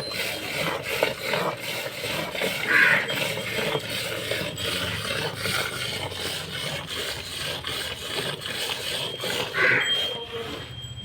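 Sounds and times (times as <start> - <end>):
milk squirting into a pail: 0.1 - 9.7.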